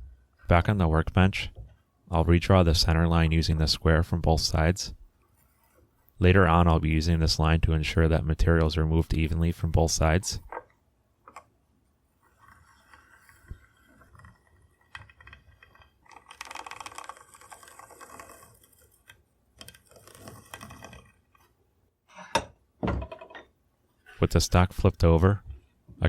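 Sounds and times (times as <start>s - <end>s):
pencil scratching on wood: 5.2s - 6.1s, 12.2s - 21.5s
square clicking and knocking: 12.3s - 21.5s.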